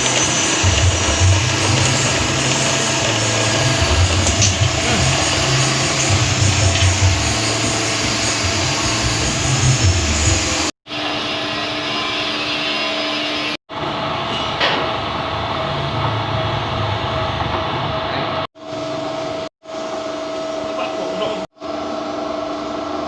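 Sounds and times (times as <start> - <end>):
pellet mill droning: 0.0 - 14.2.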